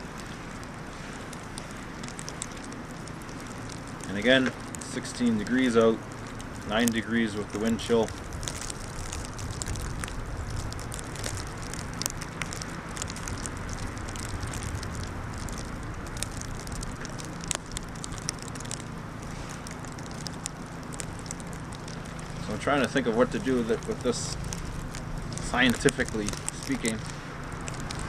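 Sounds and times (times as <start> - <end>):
light ticks and crackles: 0.0 - 28.0
wind noise on microphone: 8.1 - 18.0.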